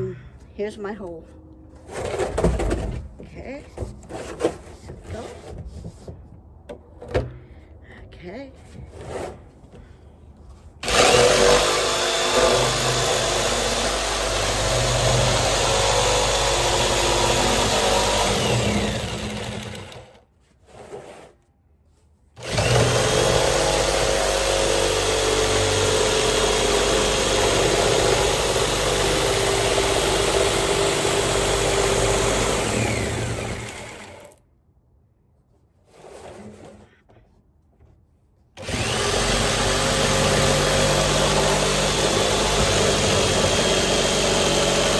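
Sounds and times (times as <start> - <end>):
jigsaw cutting metal barrel: 10.8 - 20.2, 22.4 - 34.4, 38.6 - 44.9.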